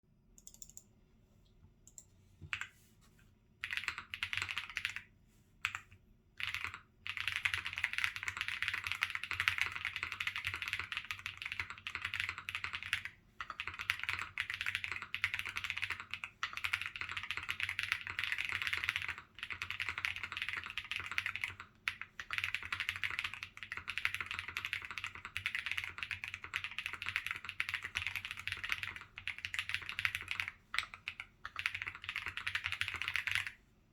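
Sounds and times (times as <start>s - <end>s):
clacky mechanical keyboard typing: 3.6s - 5.0s, 5.6s - 33.5s.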